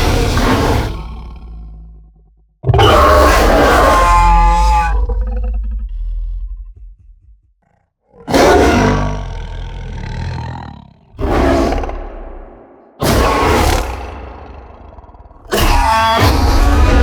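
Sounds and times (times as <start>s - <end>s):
loud rough roars: 8.3s - 17.0s.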